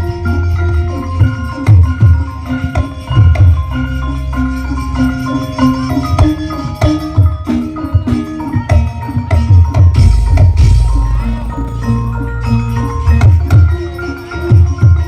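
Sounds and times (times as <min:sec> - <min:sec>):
loud music with heavy bass: 0:10.0 - 0:13.0.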